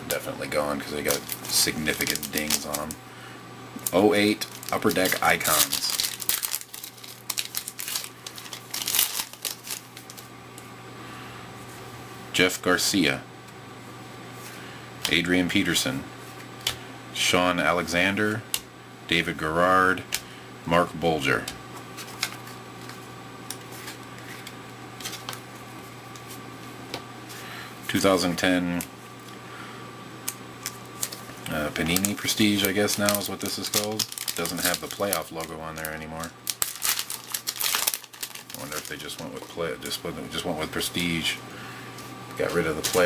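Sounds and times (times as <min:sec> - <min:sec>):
plastic wrapper tearing and crinkling: 0:00.9 - 0:03.0, 0:03.8 - 0:10.3, 0:30.6 - 0:39.6
trading cards clicking and sliding: 0:00.9 - 0:03.0.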